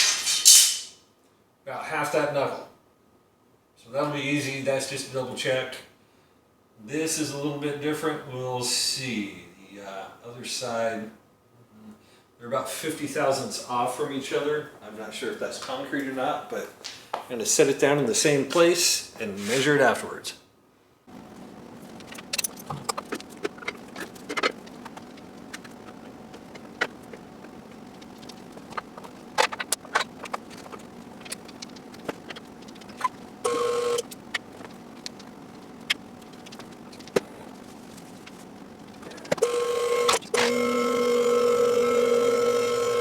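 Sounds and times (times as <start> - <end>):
steady pitched whine: 21.1 - 43.0.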